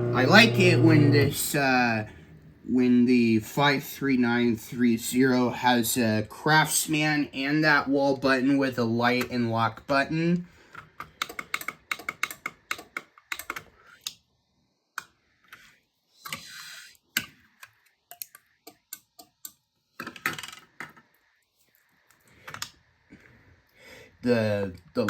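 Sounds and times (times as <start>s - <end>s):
small sharp clicks and taps: 17.1s - 20.3s.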